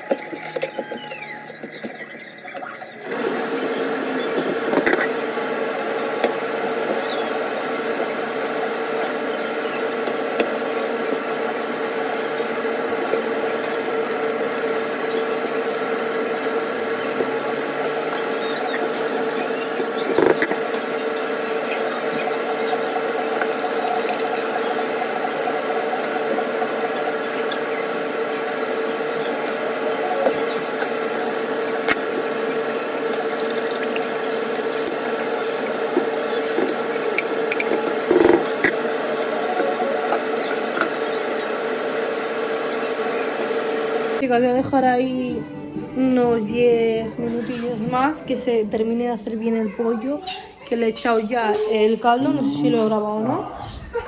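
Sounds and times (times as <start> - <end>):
appliance motor humming: 0.0 - 44.2.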